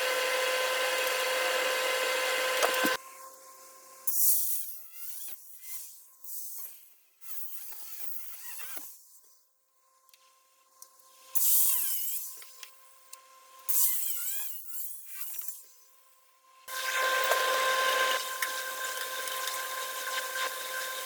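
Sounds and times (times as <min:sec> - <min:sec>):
power tool working metal: 0:00.0 - 0:03.0, 0:16.7 - 0:21.0.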